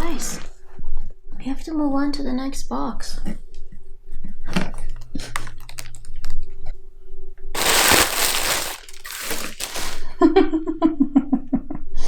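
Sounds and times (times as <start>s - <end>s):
cardboard box crackling: 7.6s - 10.1s
loud tearing rips: 7.6s - 10.1s.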